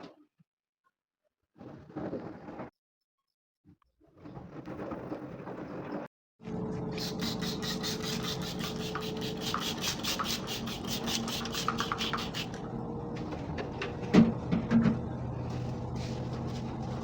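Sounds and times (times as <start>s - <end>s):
rapid scrubbing strokes: 7.0s - 12.6s.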